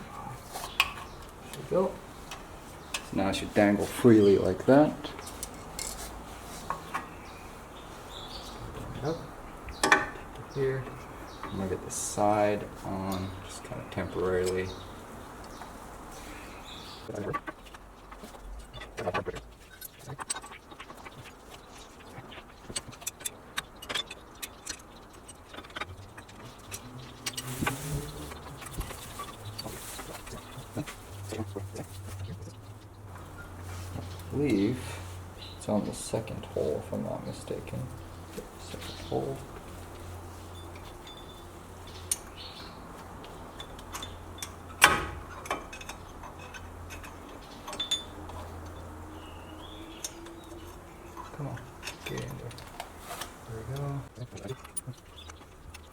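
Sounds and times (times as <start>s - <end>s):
small metallic clinks and rattles: 5.0s - 7.2s, 17.3s - 27.8s, 37.4s - 55.9s.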